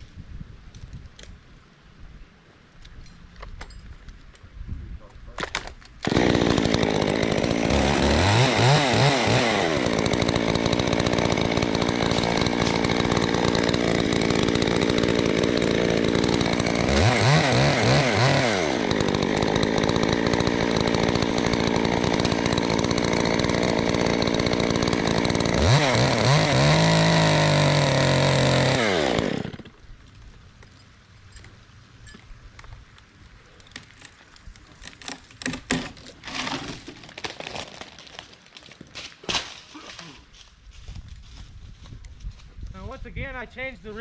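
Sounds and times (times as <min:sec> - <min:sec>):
chainsaw cutting: 0:05.4 - 0:29.9, 0:33.8 - 0:40.5.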